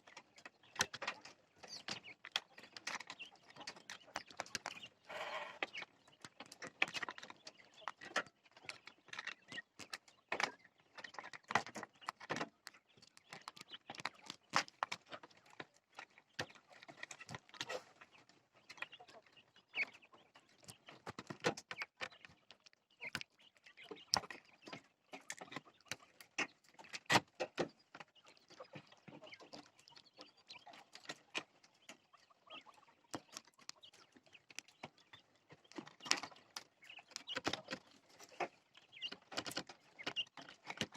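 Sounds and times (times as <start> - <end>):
quail clicks and taps: 0.0 - 40.9
short quail calls: 5.1 - 5.6.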